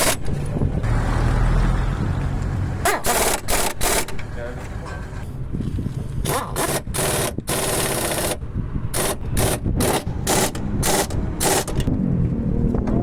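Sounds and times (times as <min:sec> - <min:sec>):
pneumatic tool bursts: 0:00.0 - 0:00.2, 0:02.8 - 0:04.2, 0:06.2 - 0:11.9.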